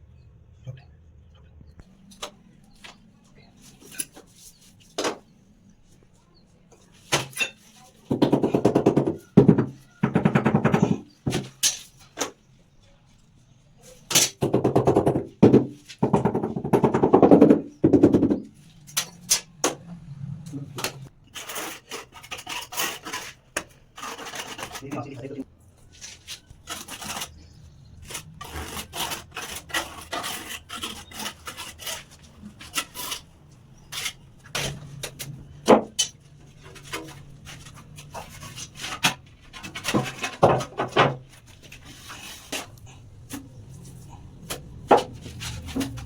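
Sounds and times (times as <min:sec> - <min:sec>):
tool rapid impacts on tile: 0:08.1 - 0:12.3, 0:14.1 - 0:19.8, 0:38.5 - 0:41.3.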